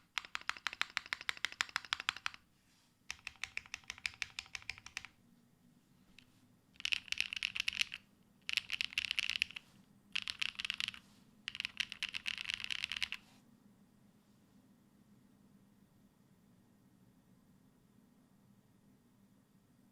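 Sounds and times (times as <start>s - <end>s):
mechanical keyboard clacks: 0.0s - 2.4s, 3.1s - 5.1s, 6.8s - 9.6s, 10.2s - 13.2s.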